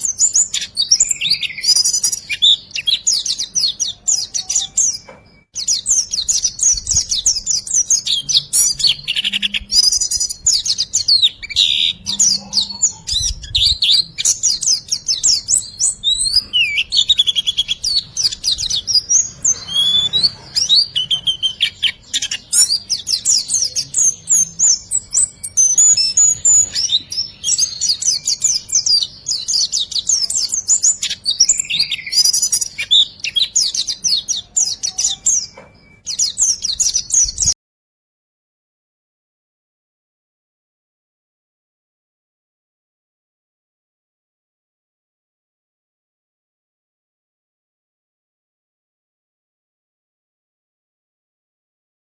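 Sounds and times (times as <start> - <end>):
songbird chirping and trilling: 0.0 - 37.6.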